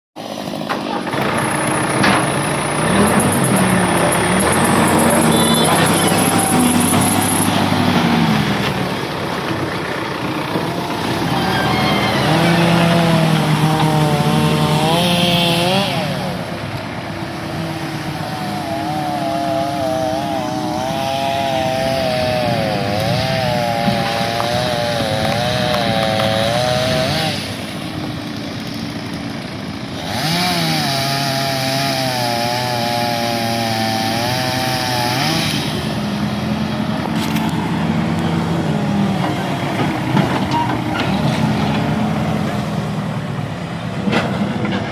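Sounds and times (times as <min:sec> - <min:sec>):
chainsaw cutting into tree trunk: 0:12.3 - 0:16.4, 0:17.6 - 0:29.2, 0:29.8 - 0:36.2.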